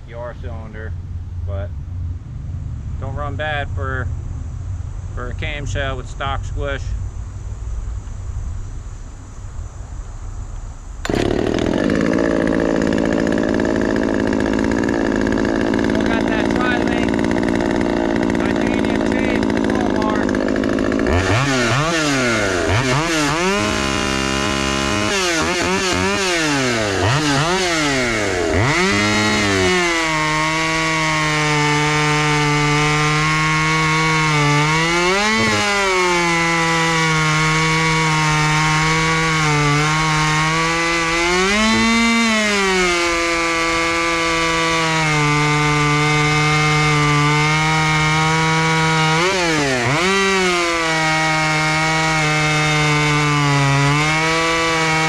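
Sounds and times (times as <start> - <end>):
chainsaw revving and cutting wood: 11.0 - 55.0.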